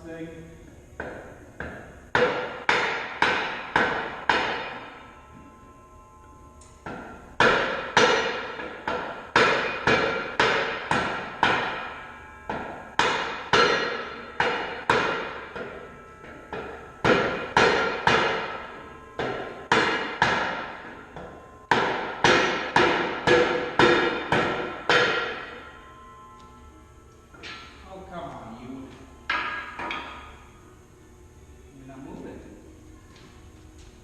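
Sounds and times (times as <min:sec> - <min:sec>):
hammer striking metal through wood: 0:01.0 - 0:05.0, 0:06.8 - 0:25.7, 0:29.3 - 0:30.4.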